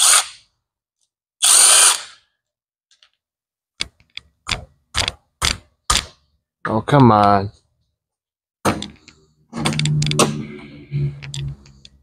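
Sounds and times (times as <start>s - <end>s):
power drill on bolts: 0.0s - 0.3s, 1.4s - 2.2s.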